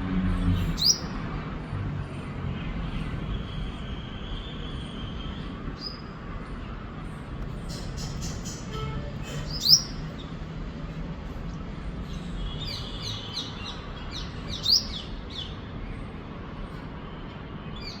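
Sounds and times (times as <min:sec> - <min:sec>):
bird chirping: 0:00.5 - 0:01.3, 0:02.1 - 0:06.7, 0:07.6 - 0:10.4, 0:12.1 - 0:16.1.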